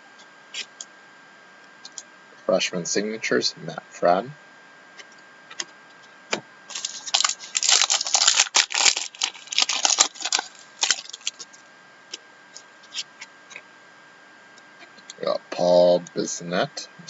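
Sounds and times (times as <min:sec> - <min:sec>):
trading cards rustling and clicking: 0:06.7 - 0:11.6.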